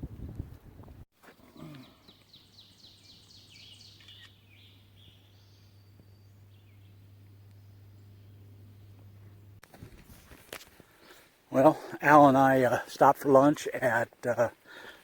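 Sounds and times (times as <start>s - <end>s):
songbird singing: 1.2s - 9.6s
faint low hum: 4.1s - 10.4s.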